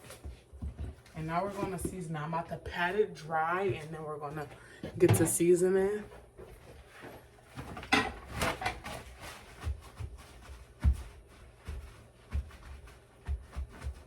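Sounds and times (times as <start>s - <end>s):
paper towels crinkling: 6.1s - 14.0s
soft thumps patting meat: 9.5s - 14.0s.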